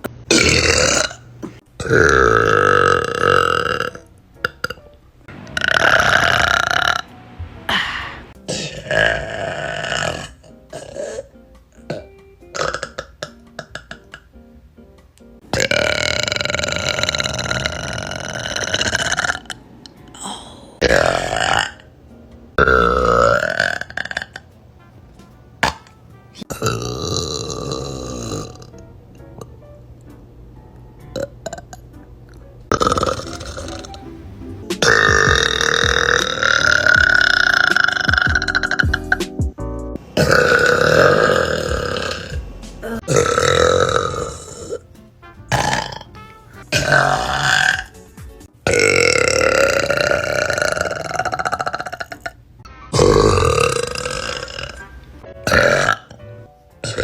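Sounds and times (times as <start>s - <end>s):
women burping: 0.3s - 4.8s, 7.7s - 14.3s, 15.5s - 21.8s, 22.6s - 24.4s, 26.4s - 28.8s, 32.7s - 34.0s, 34.8s - 39.2s, 40.2s - 44.8s, 45.6s - 47.9s, 48.7s - 52.4s, 53.0s - 56.2s.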